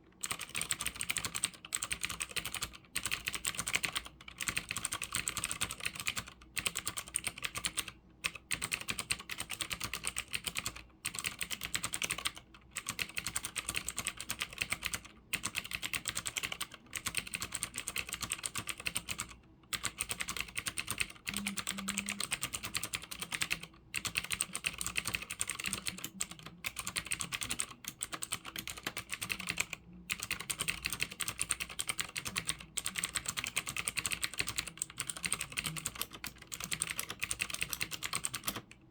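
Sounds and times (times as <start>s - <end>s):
fast typing on mechanical keyboard: 0.2s - 38.8s.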